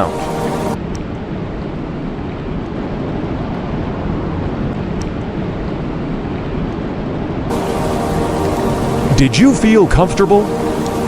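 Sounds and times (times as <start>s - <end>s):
steady rainfall: 0.0s - 0.8s, 7.5s - 11.0s.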